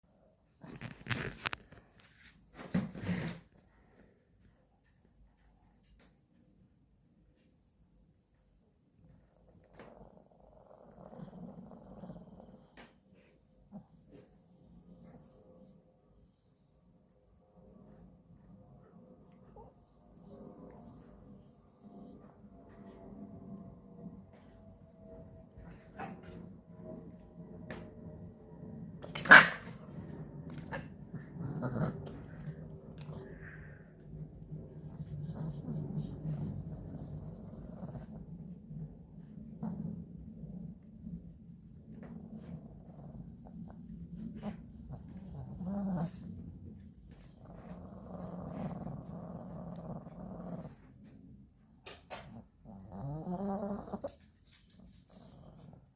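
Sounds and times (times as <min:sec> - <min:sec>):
dog growling: 0:09.3 - 0:13.0, 0:29.0 - 0:38.6, 0:39.2 - 0:40.7, 0:41.9 - 0:51.0, 0:52.1 - 0:54.3.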